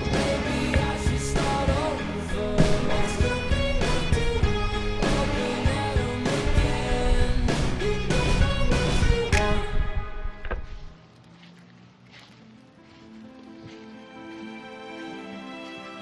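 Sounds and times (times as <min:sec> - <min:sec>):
rock music with singing: 0:00.0 - 0:10.9.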